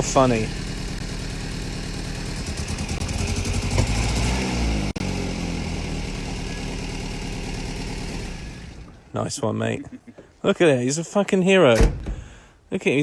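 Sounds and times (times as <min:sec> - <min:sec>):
petrol engine running: 0:00.0 - 0:09.1.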